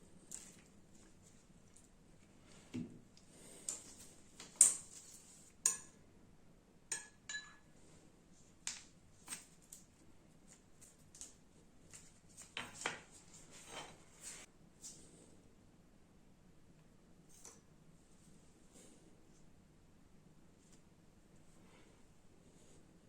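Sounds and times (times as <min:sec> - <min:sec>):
utensil clinking against dishes: 0:06.9 - 0:07.7.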